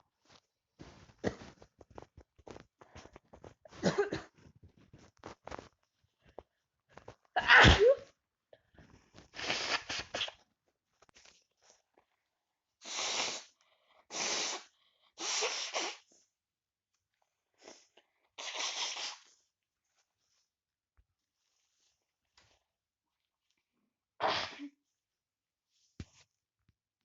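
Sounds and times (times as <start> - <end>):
person sneezing: 7.4 - 8.0, 24.2 - 24.8.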